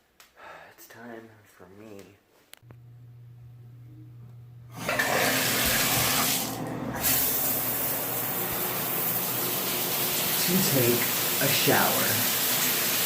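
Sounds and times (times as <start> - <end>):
shower faucet turned on: 4.7 - 13.0
shower water hissing: 4.8 - 13.0.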